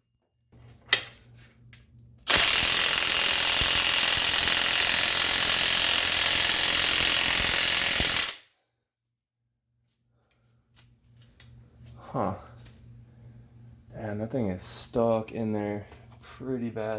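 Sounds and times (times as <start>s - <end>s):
impact wrench hammering: 2.3s - 8.4s.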